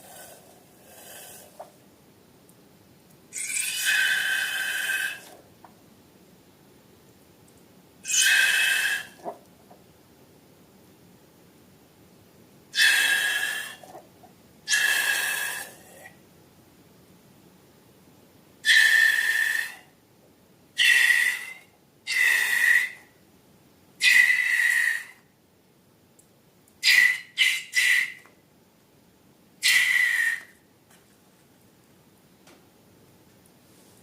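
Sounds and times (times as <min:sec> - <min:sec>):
air squealing from balloon neck: 0:03.4 - 0:05.4, 0:08.0 - 0:09.3, 0:12.8 - 0:14.0, 0:14.7 - 0:15.8, 0:20.8 - 0:23.0, 0:24.0 - 0:25.2, 0:26.8 - 0:28.2, 0:29.6 - 0:30.5.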